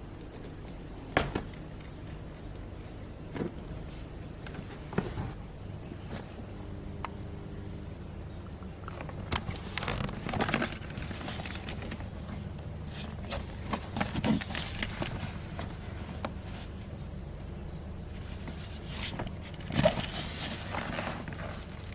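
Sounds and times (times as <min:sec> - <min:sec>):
steady low hum: 0:00.0 - 0:21.9.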